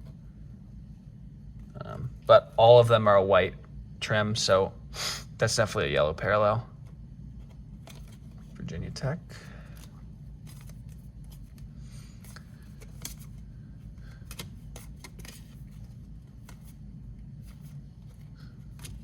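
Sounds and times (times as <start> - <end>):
steady low hum: 0.0 - 19.0
trading cards clicking and rustling: 7.4 - 19.0.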